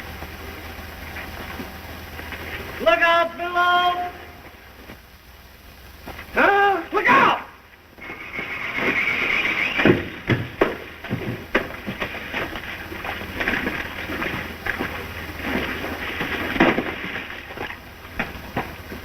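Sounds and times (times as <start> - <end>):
steady rumbling noise: 0.0 - 19.0
knocks and thumps: 8.8 - 19.0.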